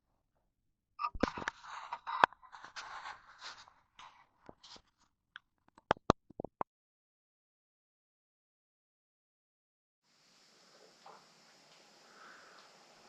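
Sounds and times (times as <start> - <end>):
rustling and scraping: 1.1 - 5.1.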